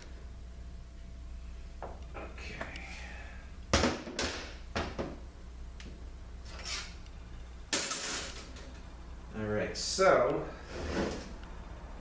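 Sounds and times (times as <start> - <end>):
low shop hum: 0.0 - 12.0.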